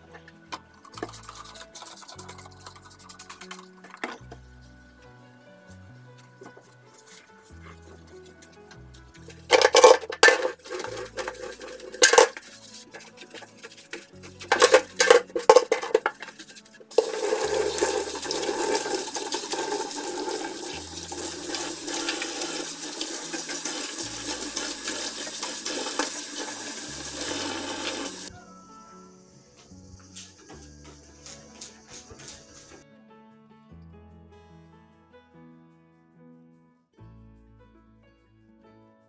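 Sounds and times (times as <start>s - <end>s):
dishes clattering in sink: 9.4s - 12.4s, 14.4s - 16.3s
tap running: 9.5s - 28.3s.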